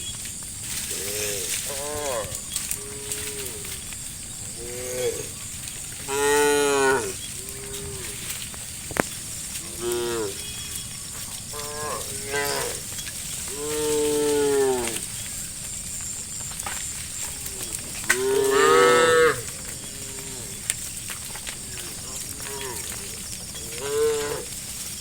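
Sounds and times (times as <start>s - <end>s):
cattle mooing: 0.9s - 3.8s, 4.5s - 5.4s, 6.1s - 8.3s, 11.5s - 15.1s, 17.2s - 20.7s, 21.5s - 24.5s.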